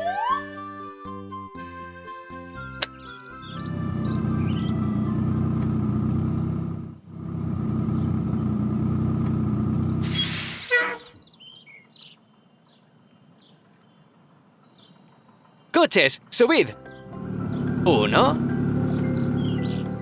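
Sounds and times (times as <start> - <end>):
birds chirping: 3.4 - 6.6, 17.4 - 20.0
cartoon truck engine running: 3.4 - 11.1, 15.8 - 20.0
air-brake hiss: 10.0 - 11.0.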